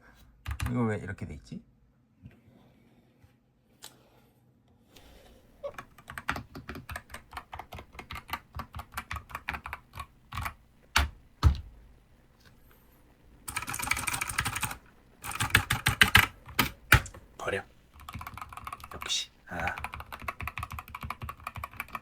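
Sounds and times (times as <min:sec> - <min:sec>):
keyboard typing: 0:00.4 - 0:00.8, 0:05.6 - 0:22.0.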